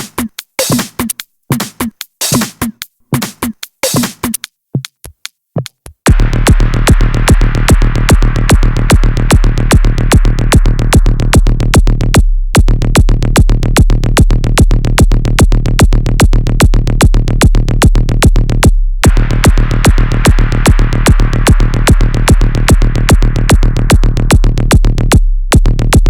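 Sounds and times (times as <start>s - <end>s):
electronic dance track: 0.0s - 4.9s, 6.1s - 12.0s, 19.0s - 26.0s
fast kick-drum beat: 0.0s - 26.0s
deep bass: 6.1s - 26.0s.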